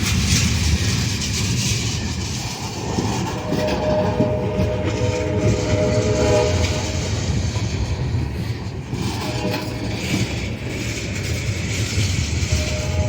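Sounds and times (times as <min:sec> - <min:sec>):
rumble of moving train: 0:00.0 - 0:13.0
locomotive horn: 0:02.9 - 0:08.2, 0:09.0 - 0:10.6, 0:12.3 - 0:13.0.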